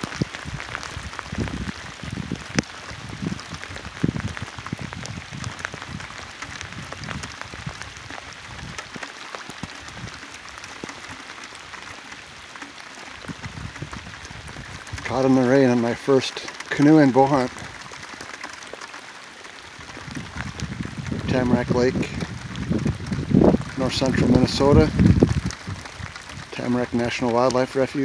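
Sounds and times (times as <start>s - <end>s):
rain falling: 0.0s - 28.0s
raindrops striking close by: 0.0s - 28.0s.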